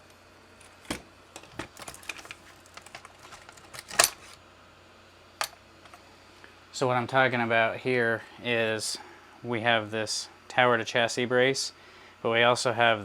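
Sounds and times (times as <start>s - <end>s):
hand tools and plastic parts clicking: 0.9s - 4.4s, 5.4s - 6.0s.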